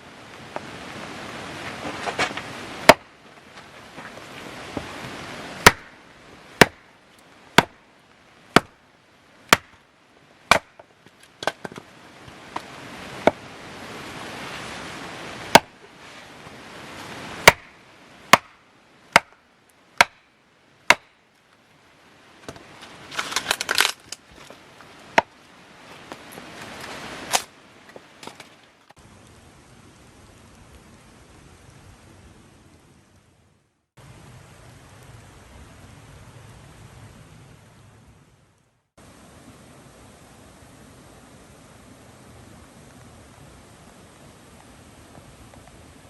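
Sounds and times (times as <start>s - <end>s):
rain hissing: 0.0s - 46.0s
axe chopping firewood: 2.1s - 3.1s, 5.6s - 6.0s, 6.6s - 6.9s, 7.5s - 7.8s, 8.5s - 8.8s, 9.4s - 9.8s, 10.4s - 13.4s, 15.5s - 15.8s, 17.4s - 19.4s, 20.0s - 21.2s, 22.4s - 25.4s
wood cracking rapidly: 22.5s - 24.6s.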